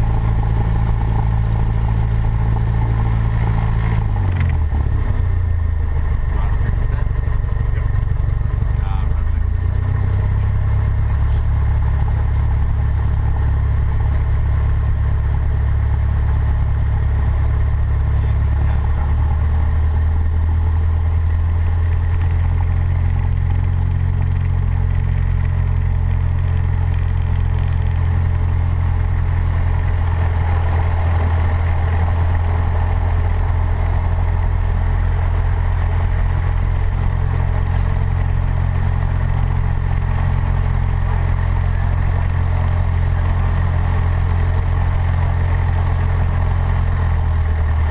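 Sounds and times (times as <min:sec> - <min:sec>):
aircraft piston engine droning: 0:17.3 - 0:47.9.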